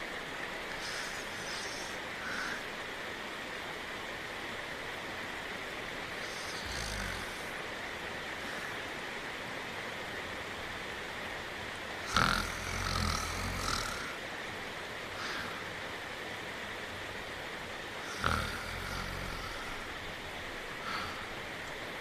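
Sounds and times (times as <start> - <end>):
steady rain hiss: 0.0 - 22.0
cartoon dog snoring: 6.2 - 7.5, 12.0 - 14.2, 18.1 - 19.7.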